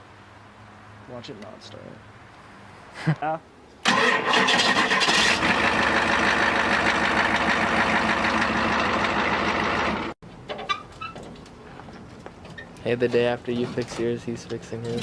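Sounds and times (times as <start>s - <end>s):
starter motor cranking: 3.9s - 7.6s
diesel engine idling clatter: 5.1s - 10.2s.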